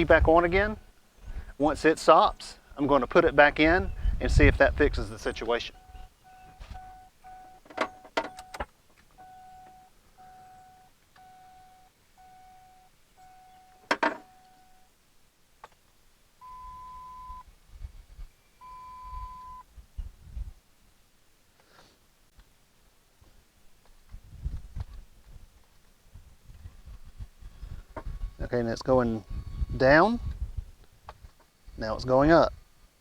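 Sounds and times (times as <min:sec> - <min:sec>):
dashboard warning chime beeps: 0:05.1 - 0:08.6, 0:09.2 - 0:14.9, 0:16.4 - 0:17.5, 0:18.6 - 0:19.7
longer higher beeps: 0:05.7 - 0:08.6, 0:09.2 - 0:14.9, 0:16.4 - 0:17.5, 0:18.6 - 0:19.7.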